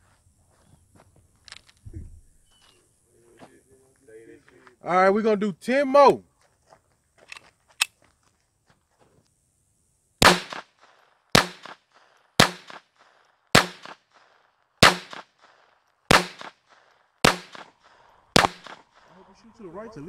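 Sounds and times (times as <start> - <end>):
gunshots with short echo: 10.2 - 19.2.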